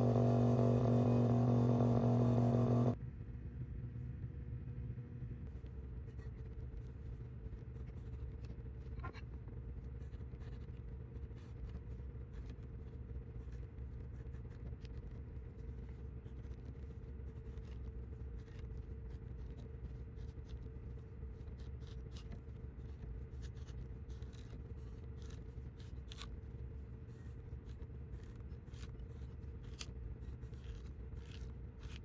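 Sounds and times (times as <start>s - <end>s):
machine hum with high tone: 0.0s - 3.0s.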